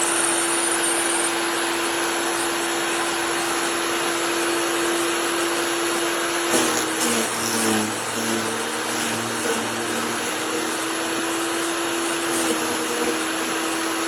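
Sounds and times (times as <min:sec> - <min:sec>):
electric wood chipper running: 0:00.0 - 0:14.0.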